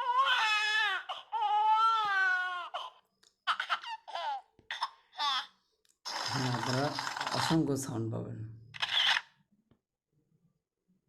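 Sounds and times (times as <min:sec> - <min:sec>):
baby crying sound effect: 0:00.0 - 0:05.6.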